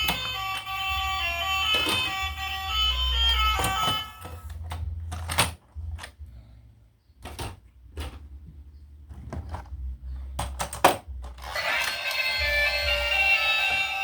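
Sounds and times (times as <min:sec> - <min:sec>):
plastic toys clicking and knocking: 0:00.0 - 0:00.9, 0:01.6 - 0:02.4, 0:03.2 - 0:06.2, 0:09.1 - 0:12.6.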